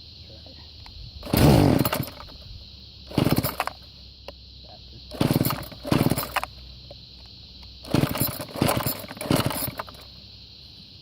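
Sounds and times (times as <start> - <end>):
recoil starter cord whirring: 1.2 - 2.4, 3.1 - 3.8, 5.1 - 6.5, 7.8 - 10.0.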